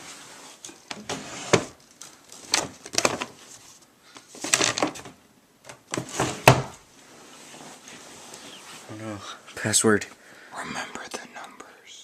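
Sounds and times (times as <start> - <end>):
scraping and rustling: 5.9 - 9.1.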